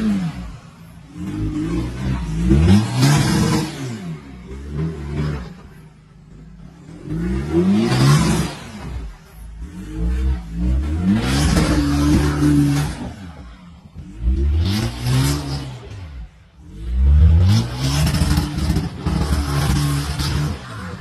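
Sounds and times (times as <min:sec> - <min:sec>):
engine revving hard: 0:00.0 - 0:05.8, 0:06.9 - 0:21.0.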